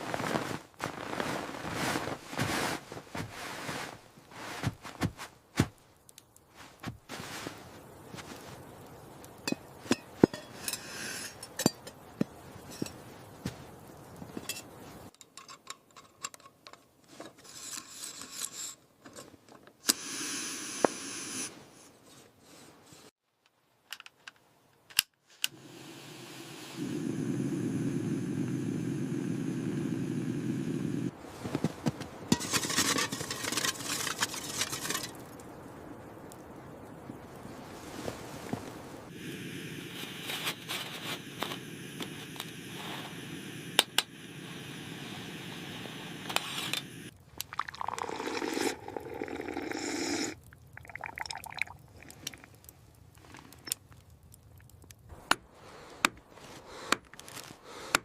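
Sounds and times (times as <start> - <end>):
rustling: 0.0 - 10.6, 31.1 - 35.6, 55.0 - 57.9
metal clicks clinks and scrapes: 14.4 - 19.3.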